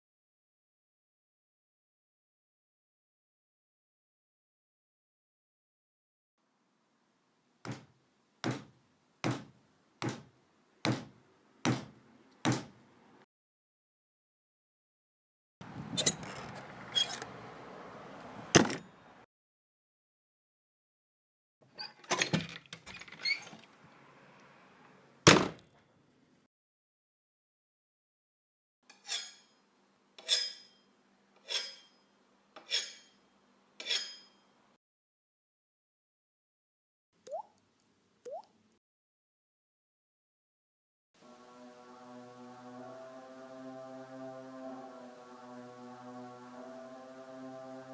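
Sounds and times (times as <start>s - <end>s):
knocking on a door: 7.7s - 10.3s, 10.9s - 11.1s, 11.7s - 12.8s
metal knife scraping and ringing: 28.9s - 29.6s, 30.2s - 34.5s.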